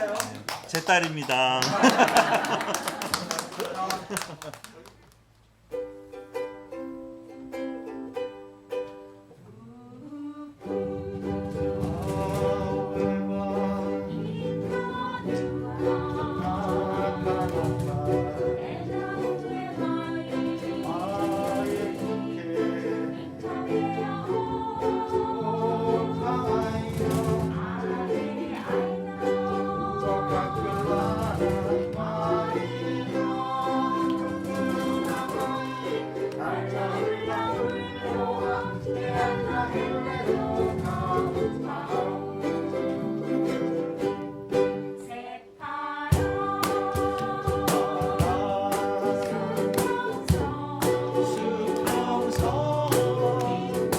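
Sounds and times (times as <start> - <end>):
ukulele ensemble strumming: 0.0 - 53.9
child singing: 9.6 - 42.9, 45.0 - 53.9.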